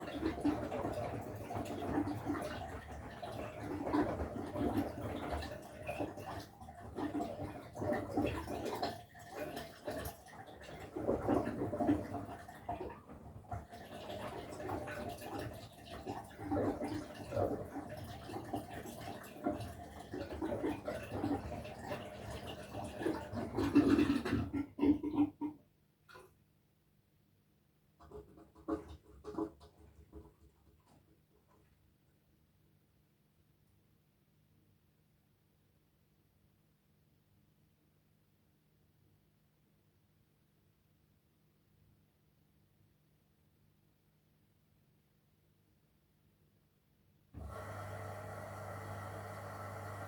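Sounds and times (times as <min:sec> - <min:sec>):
washing machine running: 0:00.0 - 0:24.5, 0:47.4 - 0:50.0
water sloshing in drum: 0:00.0 - 0:24.9.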